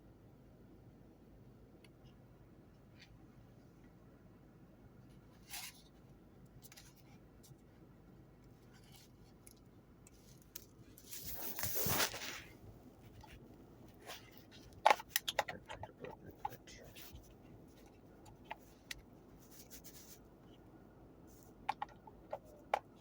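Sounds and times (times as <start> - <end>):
packaging rustling: 11.0 - 12.6.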